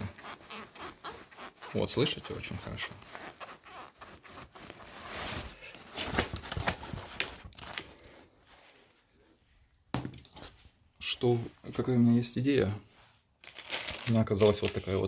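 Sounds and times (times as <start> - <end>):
backpack creaking and crunching: 0.0 - 7.8.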